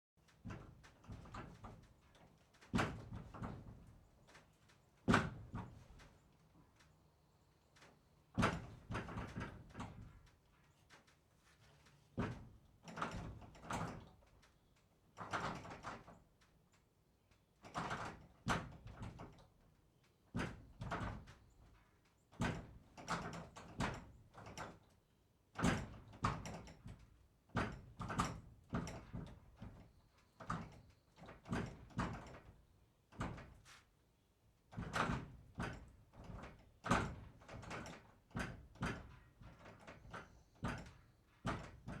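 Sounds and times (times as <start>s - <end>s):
barn door knocking and rattling: 0.4s - 2.0s, 2.6s - 4.0s, 5.0s - 6.0s, 8.4s - 10.3s, 12.2s - 14.3s, 15.2s - 16.1s, 17.6s - 19.5s, 20.3s - 21.4s, 22.3s - 24.9s, 25.5s - 33.7s, 34.7s - 42.0s.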